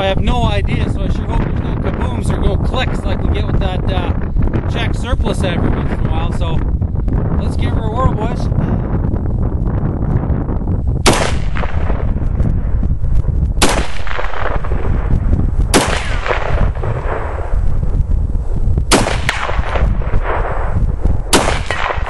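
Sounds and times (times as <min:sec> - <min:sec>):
wind rumble on microphone: 0:00.0 - 0:22.0
rifle shots with echo: 0:11.0 - 0:12.7, 0:13.6 - 0:17.6, 0:18.9 - 0:22.0.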